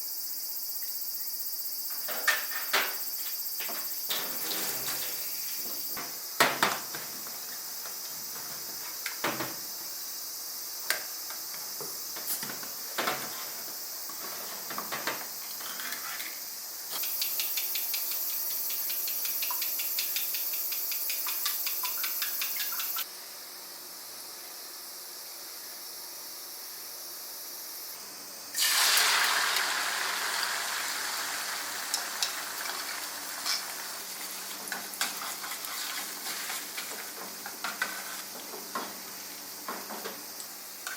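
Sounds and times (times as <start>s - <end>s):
steady high hiss: 0.0s - 40.9s
dishes and utensils clinking: 2.1s - 3.0s.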